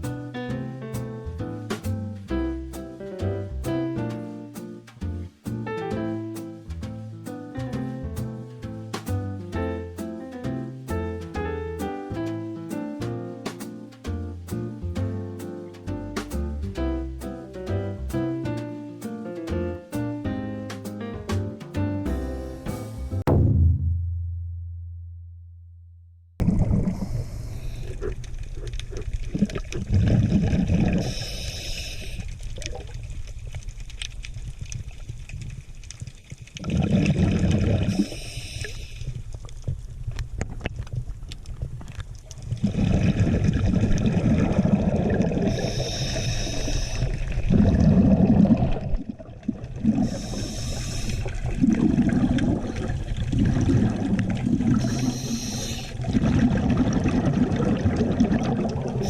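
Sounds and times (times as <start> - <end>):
bubbling gurgles: 26.4 - 59.0
underwater rumble of moving water: 26.4 - 59.0
bursts of hiss and bubbles: 29.3 - 32.8, 36.6 - 39.2, 42.5 - 59.0.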